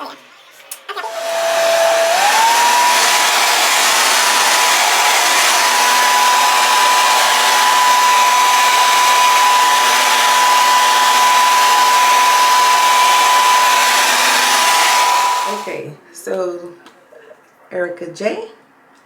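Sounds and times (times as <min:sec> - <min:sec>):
hair dryer blowing: 0:01.0 - 0:15.9.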